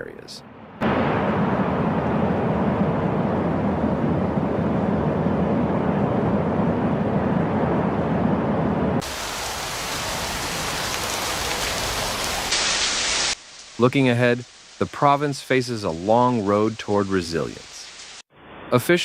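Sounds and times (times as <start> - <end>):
rushing floodwater: 9.0 - 17.9
rain downpour: 9.0 - 18.2.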